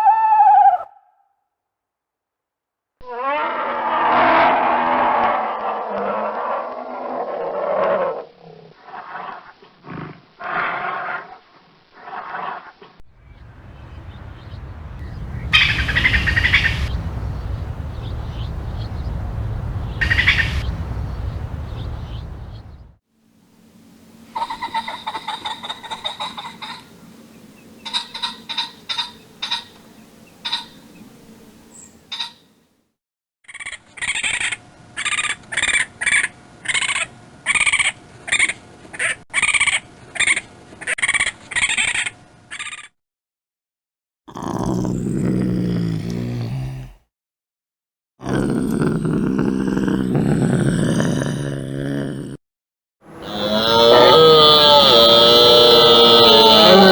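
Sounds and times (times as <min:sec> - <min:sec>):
steady low rumble: 0:13.1 - 0:23.0
faint chirps: 0:13.2 - 0:23.0
wild bird calls: 0:13.2 - 0:23.0, 0:27.6 - 0:31.1, 0:53.1 - 0:55.2.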